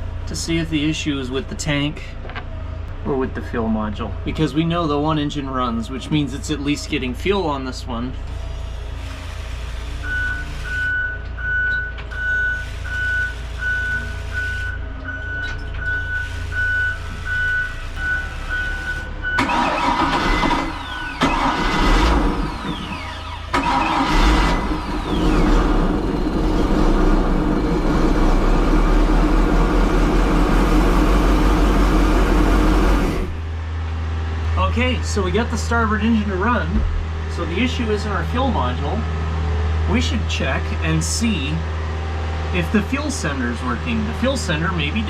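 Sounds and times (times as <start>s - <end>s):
boat engine cranking and running: 18.0s - 33.4s.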